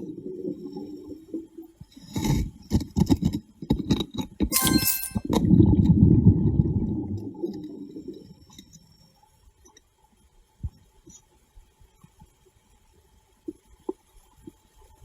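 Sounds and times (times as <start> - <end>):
bright clink: 4.5 - 5.3.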